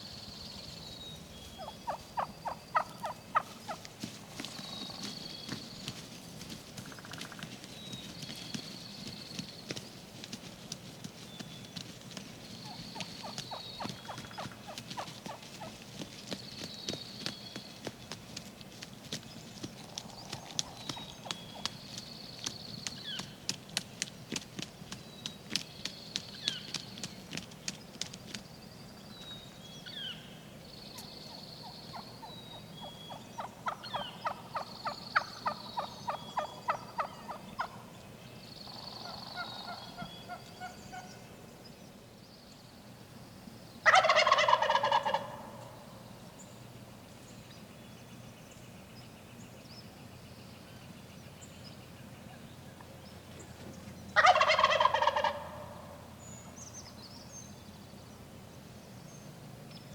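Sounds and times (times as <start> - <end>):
faint songbirds: 0.0 - 59.9
turkey gobbling: 1.6 - 3.9, 43.8 - 45.8, 54.2 - 55.9
turkey yelps: 43.9 - 45.5, 54.2 - 55.8.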